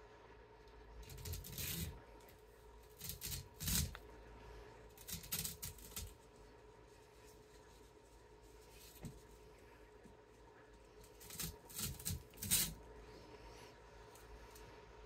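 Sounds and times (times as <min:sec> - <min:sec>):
rustling and scraping window screen: 0:01.0 - 0:04.0, 0:04.8 - 0:12.9.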